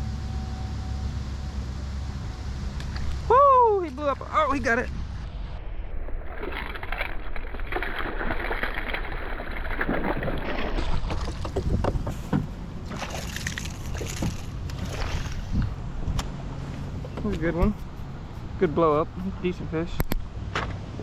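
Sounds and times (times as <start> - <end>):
low rumble of wind: 0.0 - 21.0
water splashing around kayak: 2.8 - 16.0.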